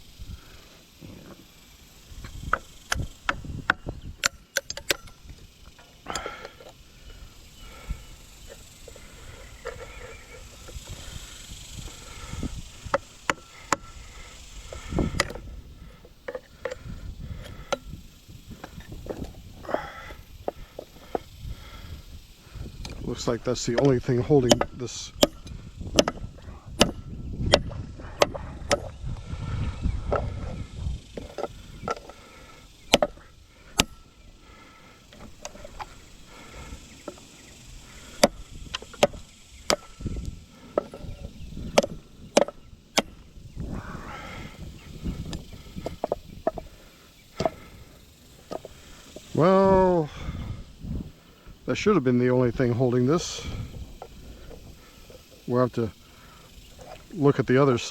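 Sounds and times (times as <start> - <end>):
hand tools clicking and knocking: 2.2 - 21.4, 22.8 - 28.9, 31.1 - 34.1, 35.0 - 43.2, 45.2 - 49.6.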